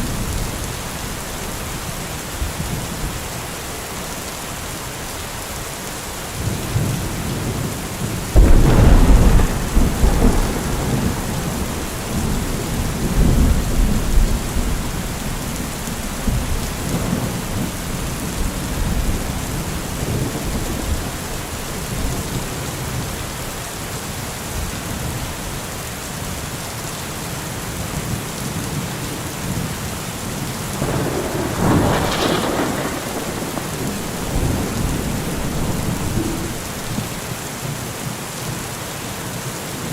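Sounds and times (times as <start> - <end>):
heavy rain: 0.0 - 39.9
thunder crack and rumble: 6.4 - 23.2, 30.8 - 37.4.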